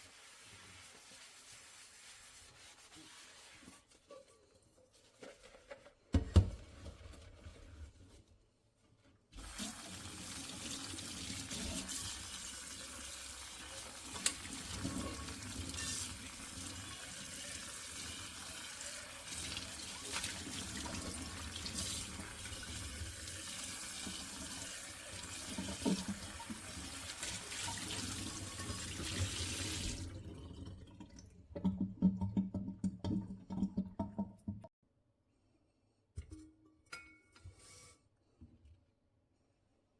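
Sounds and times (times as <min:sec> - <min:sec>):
tap water running into sink: 0:09.4 - 0:34.6.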